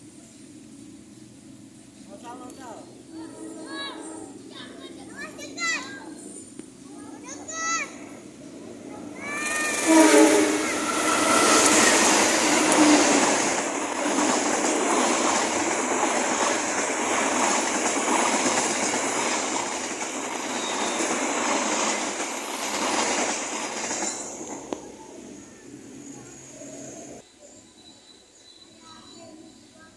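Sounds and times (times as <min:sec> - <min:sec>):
passenger train passing: 0:00.9 - 0:27.2.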